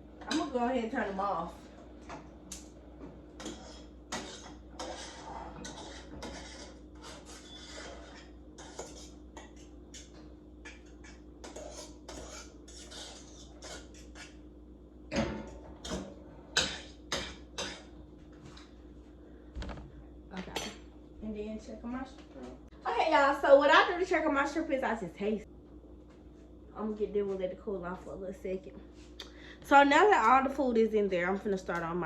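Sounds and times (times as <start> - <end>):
utensils scraping pots and dishes: 2.0 - 14.4, 15.1 - 18.7.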